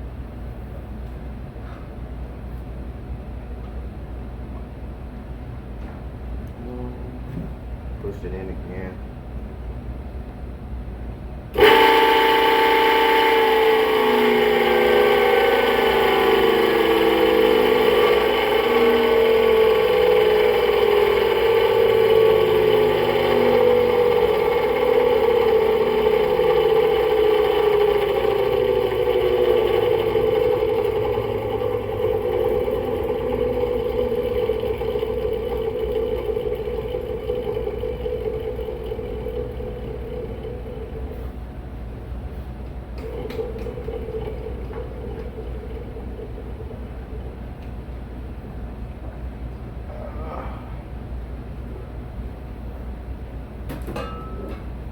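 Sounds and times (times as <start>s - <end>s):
blower motor whining and grinding: 11.5s - 41.5s, 43.0s - 48.5s.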